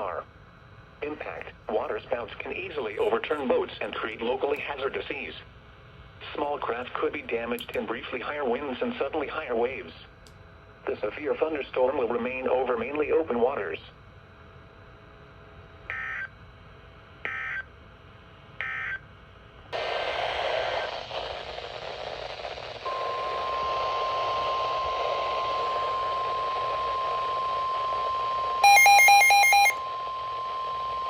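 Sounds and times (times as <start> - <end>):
radio hiss: 0.0 - 0.3, 1.0 - 5.6, 6.2 - 10.1, 10.8 - 13.9, 19.8 - 31.0
buzzy data bursts: 19.8 - 31.0
harsh buzzing tone: 19.8 - 31.0.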